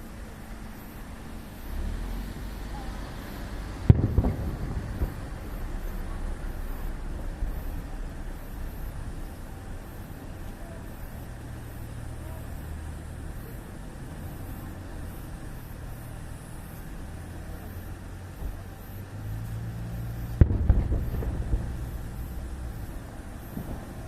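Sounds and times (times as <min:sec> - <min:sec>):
firework crackling: 0:00.0 - 0:24.0
steady low rumble: 0:00.0 - 0:24.0
firework shell bang: 0:03.9 - 0:06.2, 0:20.3 - 0:22.9.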